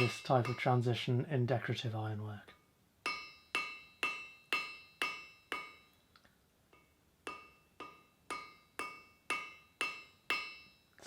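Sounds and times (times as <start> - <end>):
hammer ringing on anvil: 0.0 - 0.9, 3.1 - 6.0, 6.8 - 10.9.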